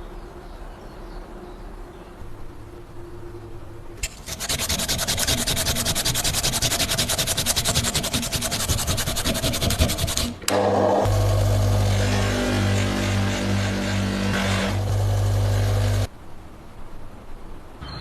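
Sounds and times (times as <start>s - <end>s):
steady low hum: 0.0s - 17.7s
abrasive sanding on a surface: 4.0s - 10.4s.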